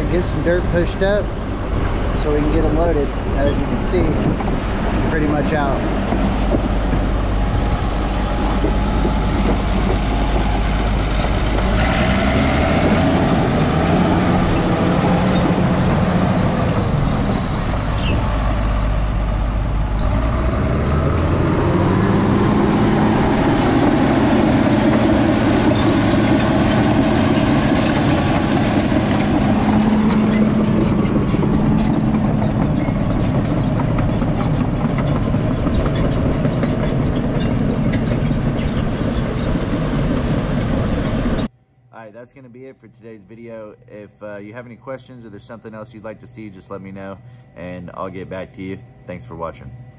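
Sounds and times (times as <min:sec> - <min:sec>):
bulldozer diesel engine under load: 0:00.0 - 0:41.5
steel tracks clattering: 0:00.2 - 0:12.1, 0:22.6 - 0:41.5.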